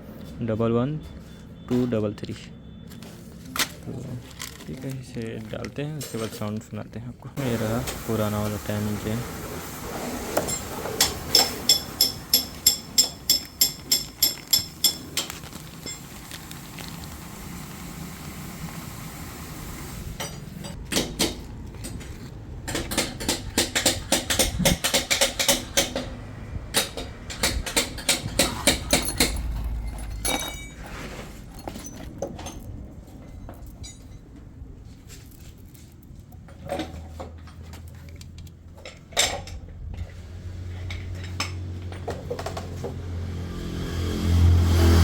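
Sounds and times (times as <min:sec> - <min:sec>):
metal clinks and rattles: 0:10.4 - 0:16.4, 0:26.7 - 0:34.4.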